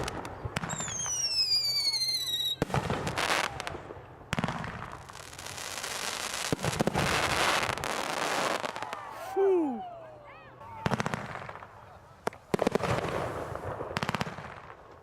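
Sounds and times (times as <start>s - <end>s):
firework bangs: 0.0s - 9.2s, 10.7s - 15.0s
firework crackling: 0.0s - 9.8s, 10.7s - 15.0s
firework falling whistle: 0.6s - 3.5s.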